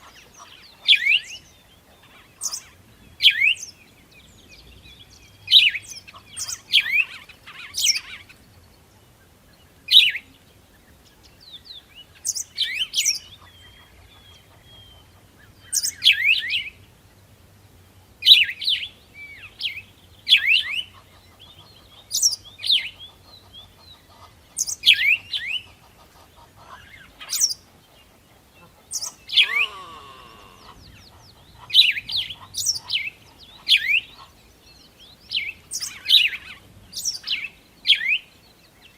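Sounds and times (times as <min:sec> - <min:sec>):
songbirds chirping: 0:00.0 - 0:38.9
low long bird call: 0:26.6 - 0:32.7.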